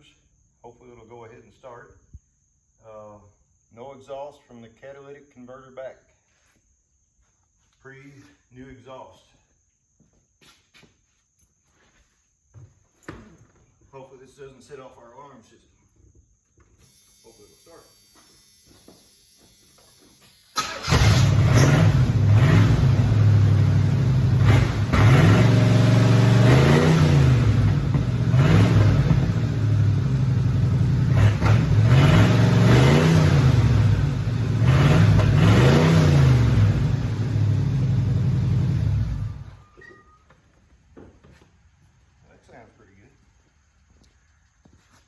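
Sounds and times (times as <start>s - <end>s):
car engine starting: 20.5s - 39.6s
car engine revving: 20.6s - 39.5s.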